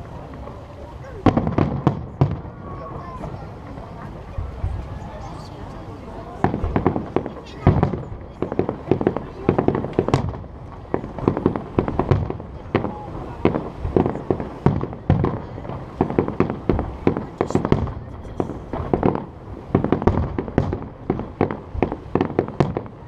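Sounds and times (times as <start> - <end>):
firework shells bursting: 6.4 - 23.0.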